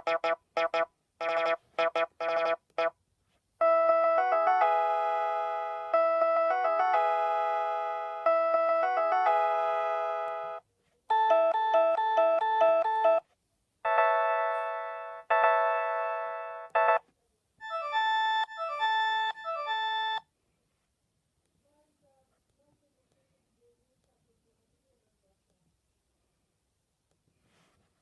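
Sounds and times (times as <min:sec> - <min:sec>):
mobile phone ringtone melody: 0:00.0 - 0:02.9, 0:03.6 - 0:13.2, 0:13.9 - 0:17.0, 0:17.6 - 0:20.2.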